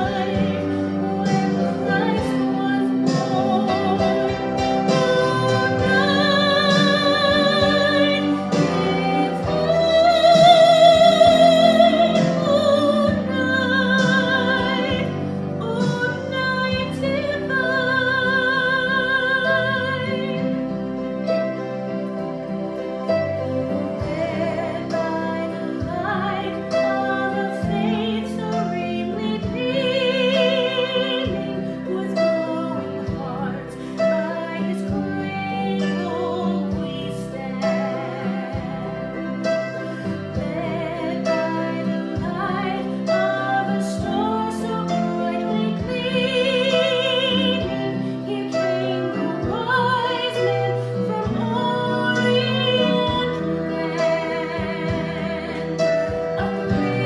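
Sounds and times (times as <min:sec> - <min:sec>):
person singing with vibrato: 0:00.0 - 0:21.3, 0:23.3 - 0:57.0
instrumental accompaniment: 0:00.0 - 0:57.0.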